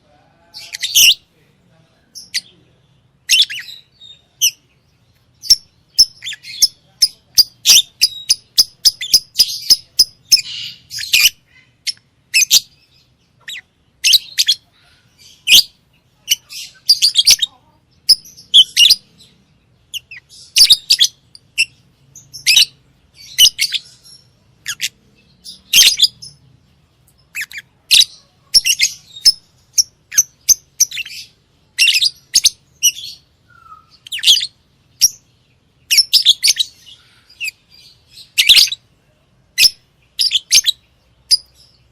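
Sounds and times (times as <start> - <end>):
birds chirping shrilly: 3.2 - 4.7, 5.3 - 26.4, 27.2 - 38.8.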